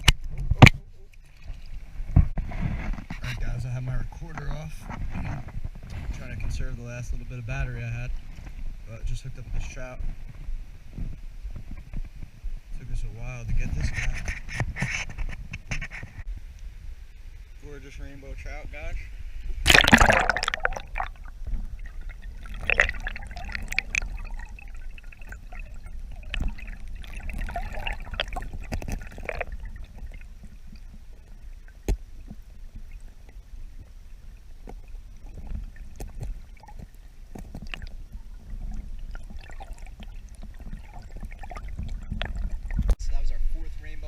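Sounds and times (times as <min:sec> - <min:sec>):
stream water splashing and gurgling: 0:00.0 - 0:12.0, 0:19.3 - 0:44.0
low rumble of moving water: 0:00.0 - 0:44.0
loud splash: 0:19.6 - 0:21.3, 0:21.9 - 0:29.9
water drips: 0:19.7 - 0:43.0.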